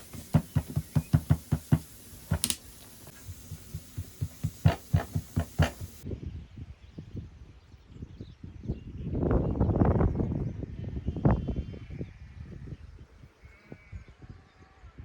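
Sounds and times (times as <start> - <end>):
short dull knocks: 0.0 - 6.0
sharp bright crack: 1.7 - 3.2.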